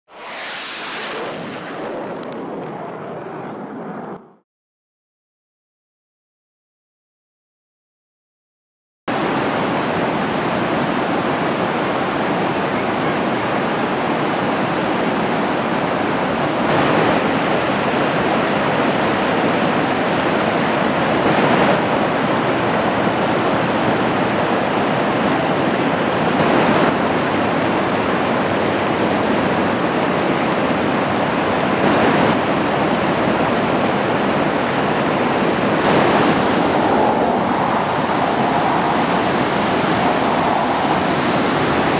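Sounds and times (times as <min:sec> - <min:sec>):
river rapids rushing: 0:09.1 - 0:36.5.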